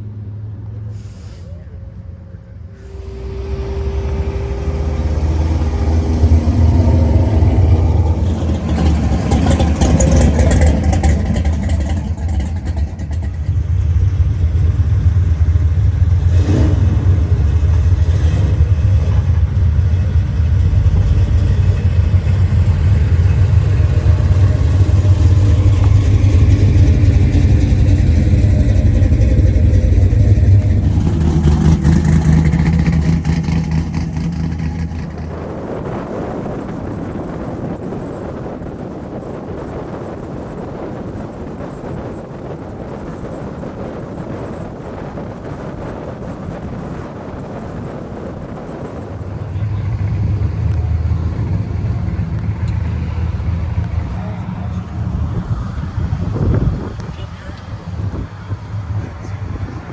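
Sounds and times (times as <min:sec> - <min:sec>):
car engine droning: 0:00.0 - 0:59.9.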